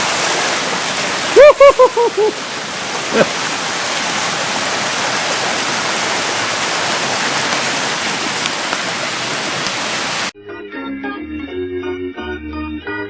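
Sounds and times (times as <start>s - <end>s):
heavy rain falling: 0.0s - 10.3s
raindrop clicks: 6.3s - 10.0s.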